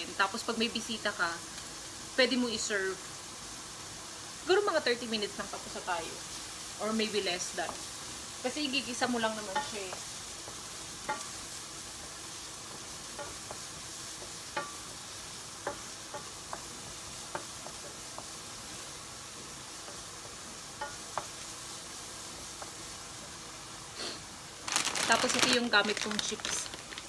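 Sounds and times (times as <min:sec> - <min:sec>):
garlic and onion sizzling in oil: 0:00.0 - 0:27.0
spatula clicking against pan: 0:09.6 - 0:11.4, 0:12.8 - 0:14.8, 0:15.6 - 0:16.7.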